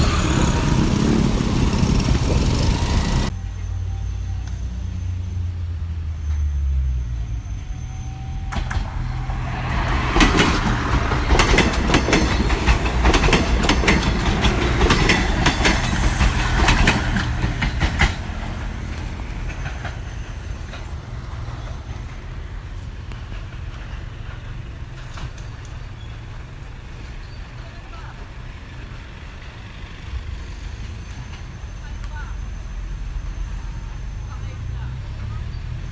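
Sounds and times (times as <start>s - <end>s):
train wheels clattering on rails: 0.0s - 3.3s, 8.4s - 27.6s
train rushing noise: 0.0s - 5.9s, 7.1s - 27.0s
train engine droning: 0.0s - 27.6s.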